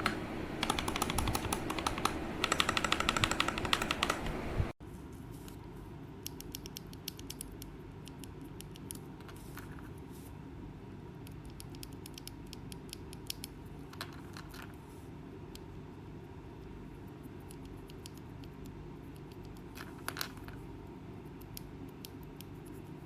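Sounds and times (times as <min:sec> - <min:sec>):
keyboard switch clicks: 0:00.0 - 0:04.4
steady low hum: 0:00.0 - 0:23.0.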